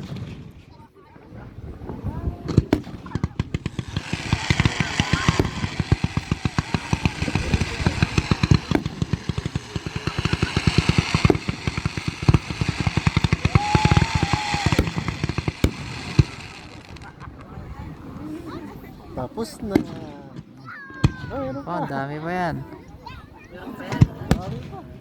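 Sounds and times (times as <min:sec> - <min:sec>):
fireworks booming: 0:00.0 - 0:00.8, 0:01.8 - 0:18.4, 0:19.4 - 0:20.1, 0:23.9 - 0:25.0
fireworks crackling: 0:00.0 - 0:25.0.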